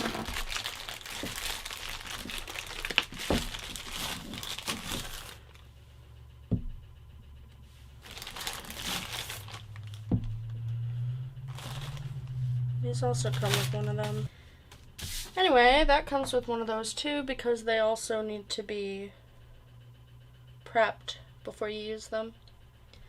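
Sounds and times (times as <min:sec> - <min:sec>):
plastic packaging crinkling: 0:00.0 - 0:05.7, 0:08.0 - 0:10.1, 0:11.4 - 0:12.4, 0:13.1 - 0:14.3.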